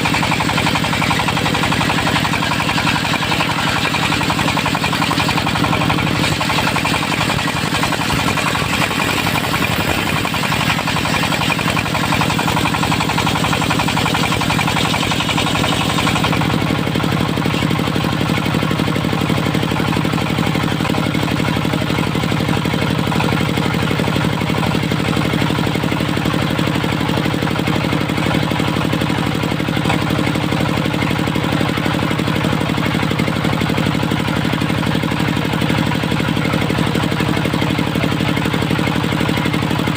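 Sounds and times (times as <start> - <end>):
circular saw: 0.0 - 21.1
diesel engine knocking: 0.0 - 39.9.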